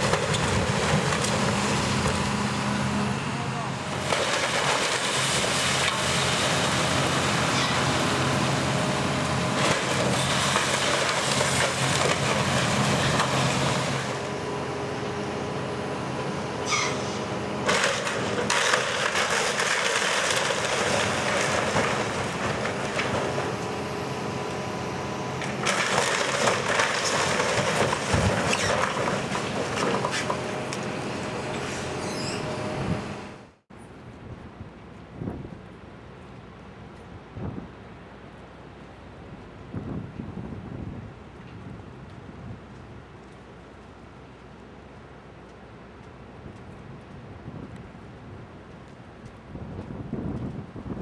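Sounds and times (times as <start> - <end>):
wood and debris crunching: 0.0 - 2.2, 3.8 - 14.4, 17.6 - 23.8, 25.4 - 32.4
demolition machinery engine hum: 0.0 - 51.0.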